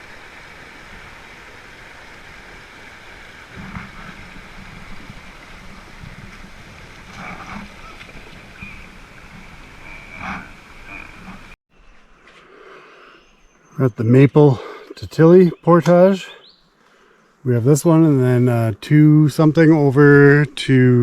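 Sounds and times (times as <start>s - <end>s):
water flowing: 0.0s - 11.6s.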